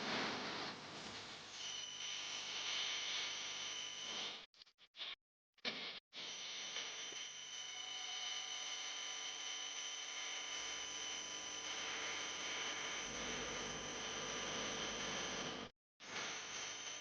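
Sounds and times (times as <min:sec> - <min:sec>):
machine whirring with high whines: 0:06.2 - 0:17.0.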